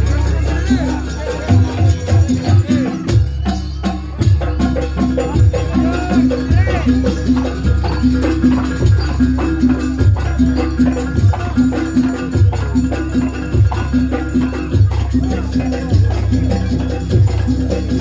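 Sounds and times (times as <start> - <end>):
gamelan music: 0.0 - 18.0.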